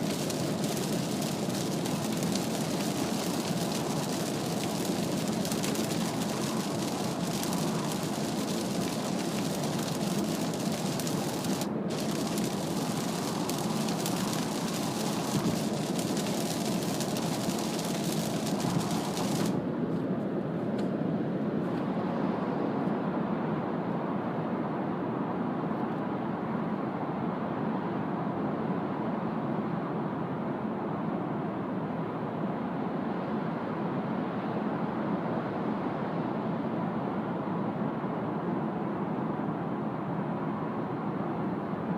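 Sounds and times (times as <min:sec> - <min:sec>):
rain on car body: 0:00.0 - 0:19.6
tyres hissing on wet road: 0:00.0 - 0:19.6.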